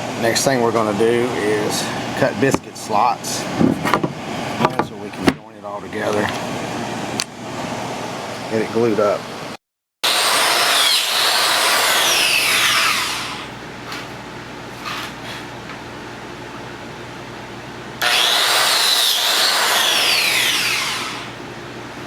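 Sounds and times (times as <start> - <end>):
plate joiner motor whining: 10.0 - 13.5, 18.0 - 21.4.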